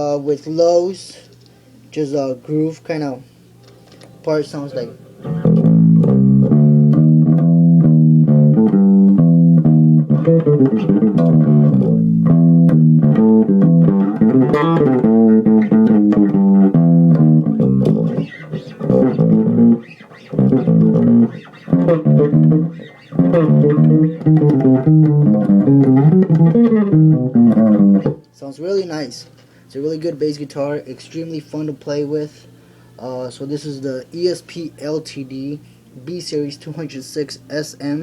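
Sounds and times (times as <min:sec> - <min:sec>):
electric bass plucked groove: 0:05.2 - 0:28.3.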